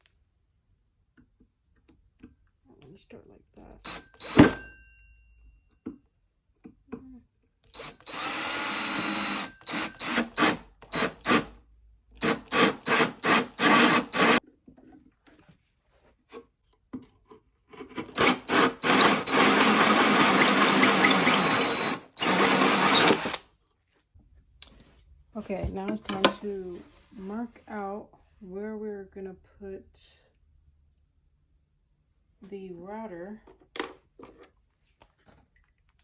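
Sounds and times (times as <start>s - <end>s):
power drill boring into wood: 3.9s - 4.6s, 7.7s - 11.5s, 12.2s - 14.4s, 18.0s - 23.4s.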